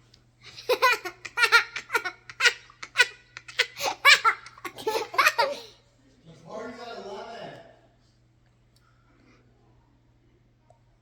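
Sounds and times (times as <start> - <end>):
child laughing: 0.5 - 5.8.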